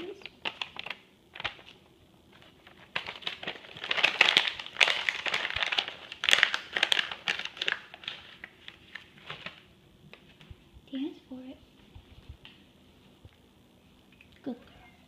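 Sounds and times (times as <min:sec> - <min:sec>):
crinkly treat bag rustling: 0:00.0 - 0:11.0.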